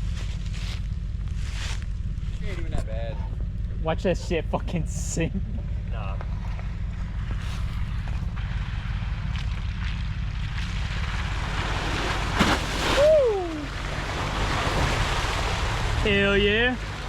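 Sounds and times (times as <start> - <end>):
truck engine rumble: 0.0 - 17.0
water and mud sloshing: 0.0 - 17.0
person whooping: 12.9 - 13.8.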